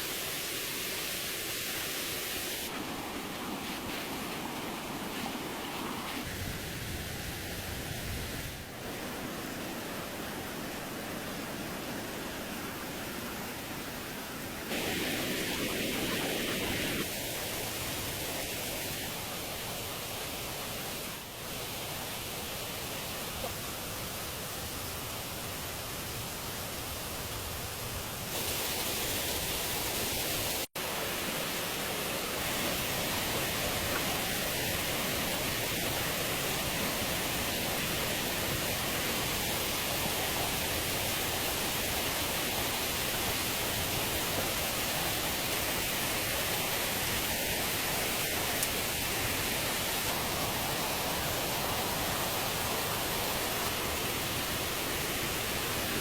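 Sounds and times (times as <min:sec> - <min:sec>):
steady rushing noise: 0:00.0 - 0:23.4.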